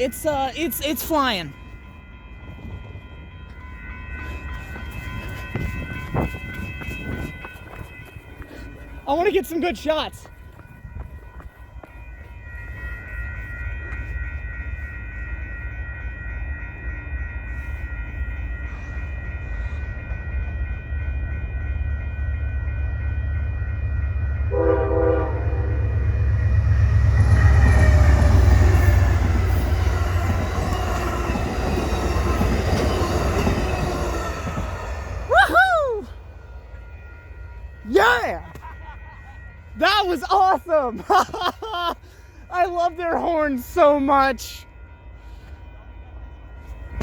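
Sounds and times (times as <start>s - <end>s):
train passing with wheel noise: 0.0s - 47.0s
train horn chord: 24.5s - 26.6s.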